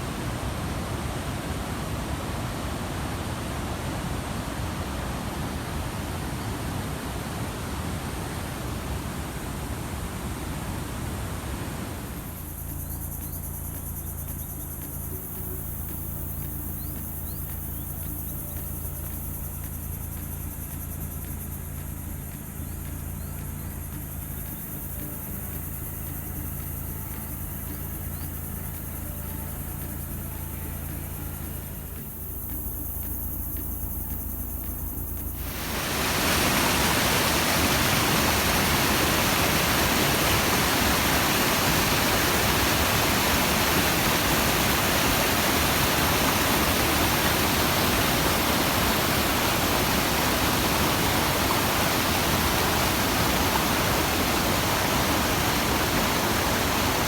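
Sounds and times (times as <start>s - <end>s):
waterfall roaring: 0.0s - 12.3s, 35.4s - 57.0s.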